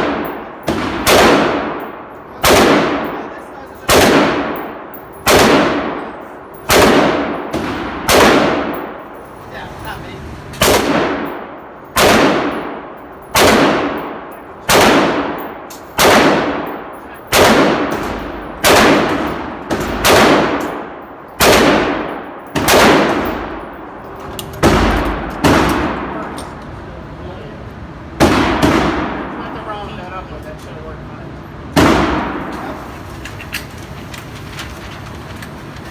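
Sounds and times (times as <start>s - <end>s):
rifle shots: 0.0s - 9.2s, 10.6s - 23.9s, 24.6s - 26.4s, 28.2s - 29.4s, 31.8s - 32.7s.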